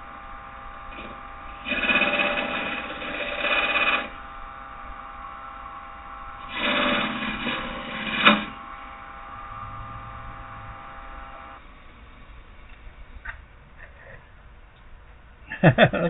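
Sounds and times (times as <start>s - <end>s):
lathe tool scraping wood: 0.0s - 11.6s
wood lathe whining: 0.0s - 11.6s.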